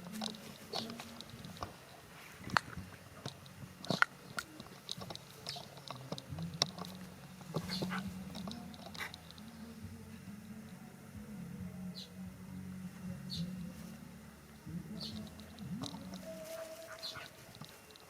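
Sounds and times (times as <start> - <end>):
chewing and crunching: 0.0 - 9.5, 15.2 - 18.0
low steady hum: 0.0 - 18.0.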